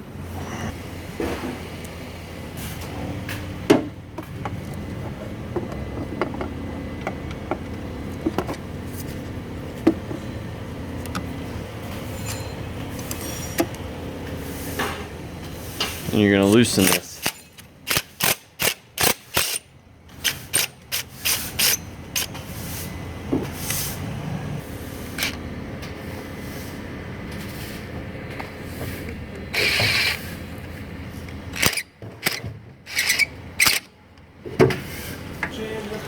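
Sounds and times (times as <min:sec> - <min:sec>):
socket ratchet clicking: 0:16.8 - 0:22.4, 0:31.6 - 0:33.9.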